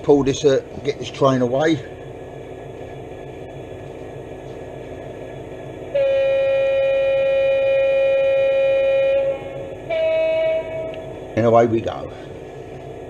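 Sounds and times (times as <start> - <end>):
model locomotive engine idling: 3.9 - 13.0
locomotive horn: 6.0 - 11.1.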